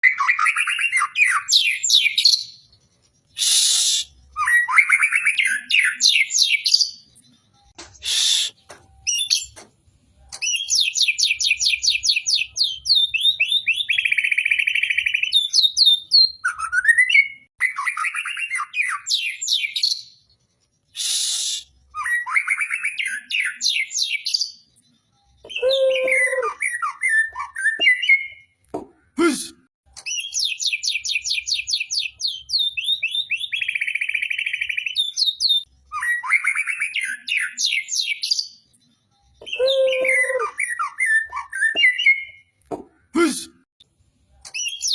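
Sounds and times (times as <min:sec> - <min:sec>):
bird singing with trills and whistles: 0:00.0 - 0:28.6, 0:29.9 - 0:42.6, 0:44.4 - 0:44.9
bird harsh hissing bursts: 0:03.4 - 0:04.2, 0:08.0 - 0:08.6, 0:21.0 - 0:21.7.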